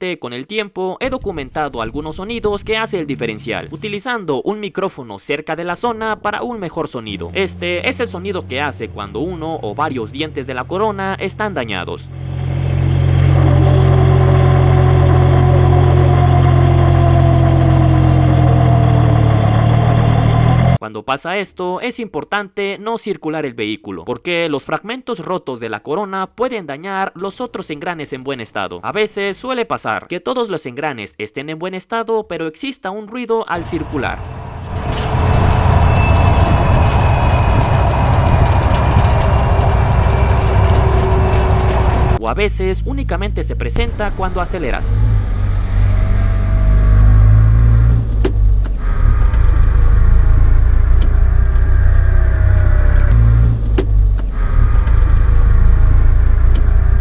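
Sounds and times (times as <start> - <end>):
differential low drone: 1.1 - 4.0, 5.8 - 20.8, 33.6 - 57.0
whine falling in pitch: 12.6 - 20.8, 33.6 - 44.9.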